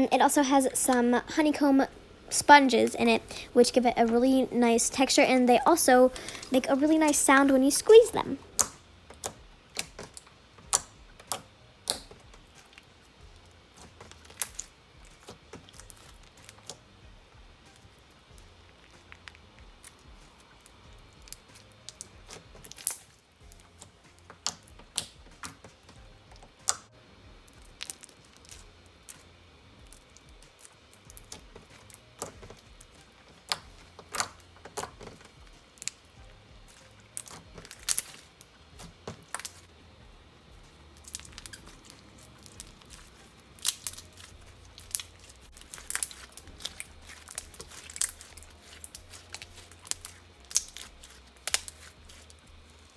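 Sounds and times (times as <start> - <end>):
slime squeezed with clicks and pops: 8.6 - 12.5.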